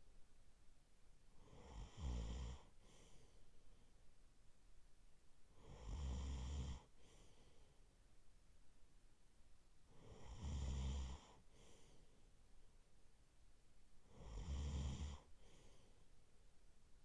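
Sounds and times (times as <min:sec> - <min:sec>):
man snoring: 0:01.4 - 0:02.7, 0:05.6 - 0:06.9, 0:10.0 - 0:11.4, 0:14.1 - 0:15.3
faint breath: 0:01.4 - 0:04.1, 0:06.6 - 0:08.0, 0:10.9 - 0:12.5, 0:14.0 - 0:16.3.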